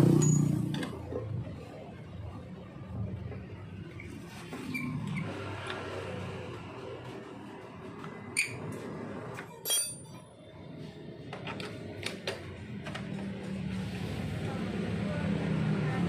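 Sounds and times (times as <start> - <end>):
metal tools clinking: 9.5 - 10.2
ringing metallic clang: 9.6 - 10.2.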